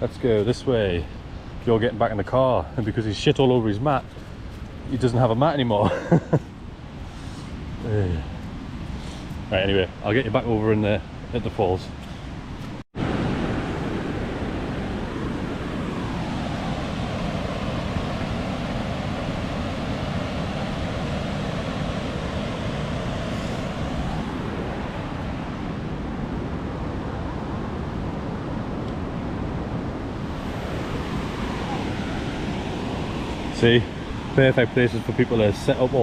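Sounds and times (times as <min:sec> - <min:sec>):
waterfall and rapids rushing: 0:10.5 - 0:36.0.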